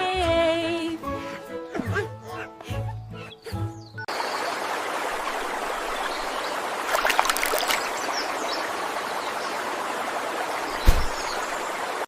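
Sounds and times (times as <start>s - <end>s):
rushing water: 4.1s - 12.0s
sharp clicks and splashes: 6.8s - 8.2s.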